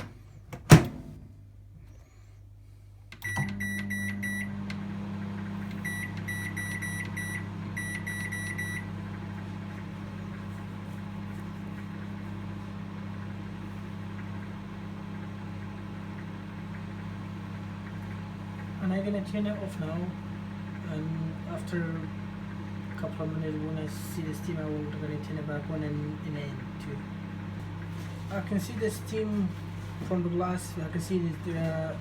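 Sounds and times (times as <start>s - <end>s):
microwave oven humming: 0.0s - 32.0s
short keypad beeps: 3.2s - 4.5s, 5.8s - 8.9s.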